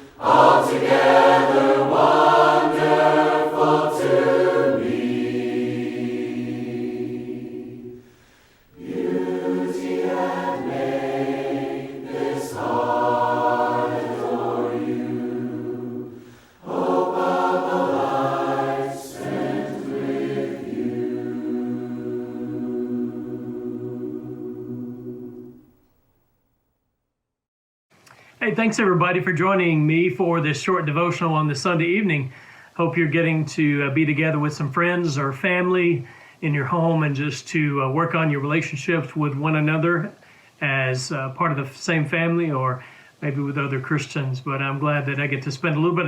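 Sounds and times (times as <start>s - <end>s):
choir singing a hymn: 0.0s - 25.7s.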